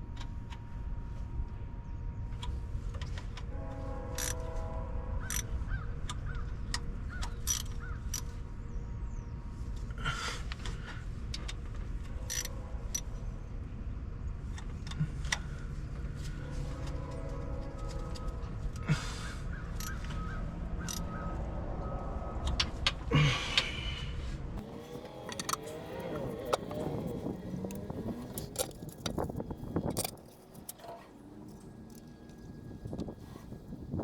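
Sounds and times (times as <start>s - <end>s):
hand tools clicking on metal: 6.7s - 8.3s, 12.2s - 13.1s, 20.8s - 21.1s, 24.6s - 33.3s.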